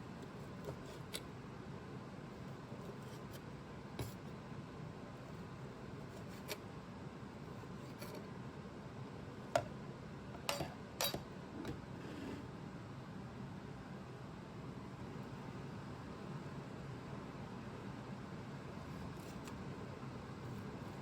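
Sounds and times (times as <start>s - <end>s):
dishes clicking and knocking: 10.4s - 11.8s.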